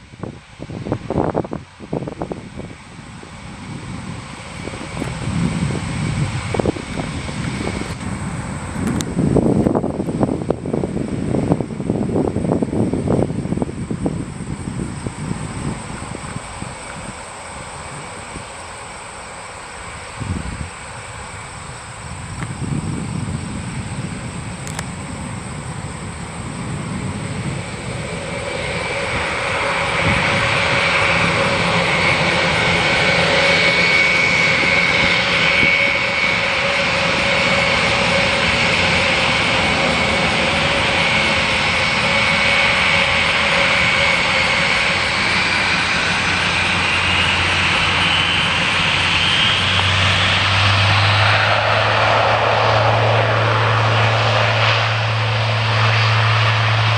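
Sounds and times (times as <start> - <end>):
turboprop engines droning: 0.0 - 56.9
low hum: 21.1 - 56.9.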